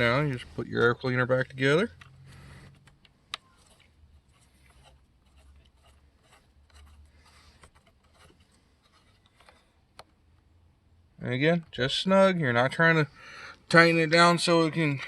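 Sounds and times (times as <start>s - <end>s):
small clicks and rubbing of parts: 1.8s - 10.2s.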